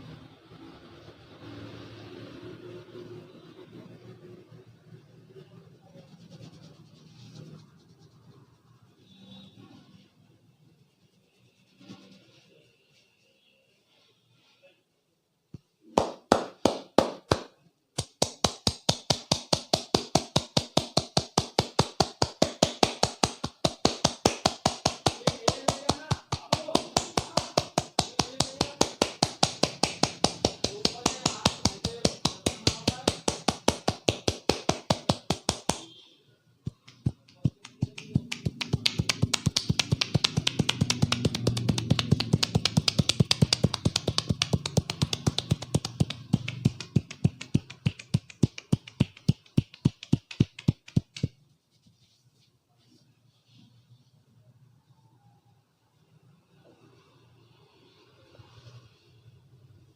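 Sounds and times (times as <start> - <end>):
hands slapping a head: 15.9 - 35.9, 36.6 - 51.4.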